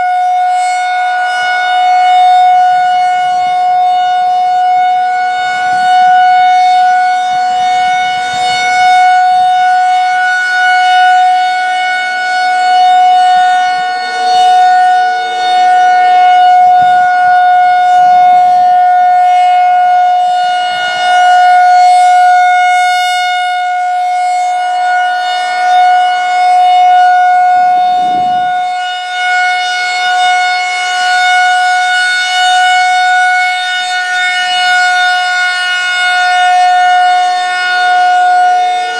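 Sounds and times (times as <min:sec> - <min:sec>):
rotating warning siren: 0:00.0 - 0:38.9.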